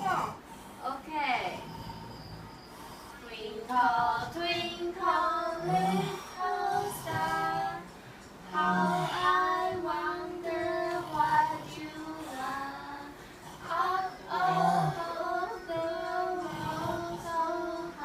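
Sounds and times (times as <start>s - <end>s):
children singing: 3.6s - 18.0s.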